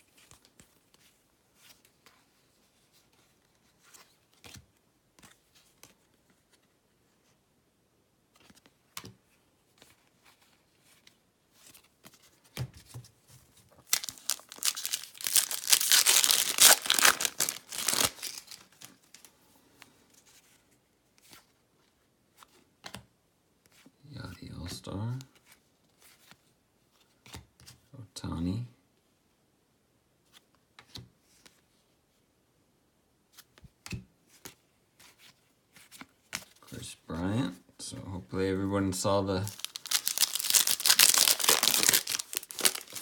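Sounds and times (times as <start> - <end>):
faint clicks of cards handled: 0.1 - 2.3, 2.9 - 6.8, 8.3 - 13.0, 18.6 - 23.9, 25.1 - 27.8, 30.3 - 31.6, 33.3 - 36.7
wrapper tearing and crinkling: 13.8 - 19.3, 39.5 - 43.0.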